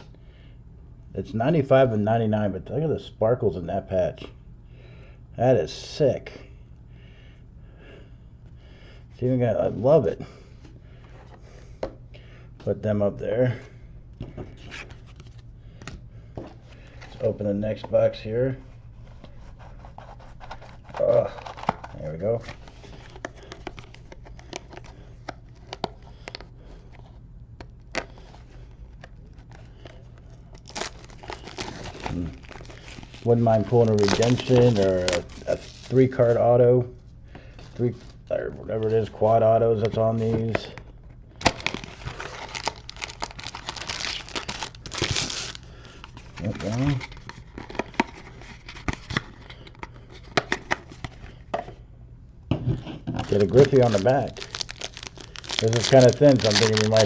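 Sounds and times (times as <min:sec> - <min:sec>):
steady low hum: 0:00.0 - 0:57.0
card box and packs handled: 0:18.9 - 0:36.6, 0:37.4 - 0:51.8, 0:52.5 - 0:57.0
wrapper crinkling: 0:28.2 - 0:36.4, 0:41.4 - 0:49.3, 0:53.2 - 0:57.0.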